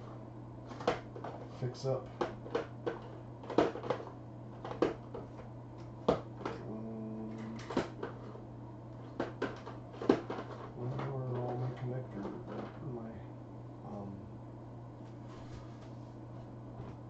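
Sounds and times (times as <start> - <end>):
low hum: 0.0 - 17.0
knocks and clicks of objects: 2.2 - 5.4, 9.0 - 12.8.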